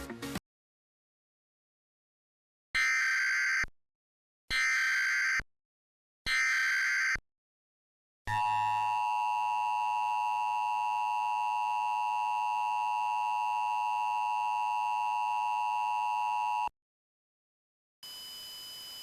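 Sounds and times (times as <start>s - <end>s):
two-tone alarm: 2.8s - 3.7s, 4.5s - 5.5s, 6.3s - 7.2s, 8.3s - 16.7s, 18.0s - 19.0s.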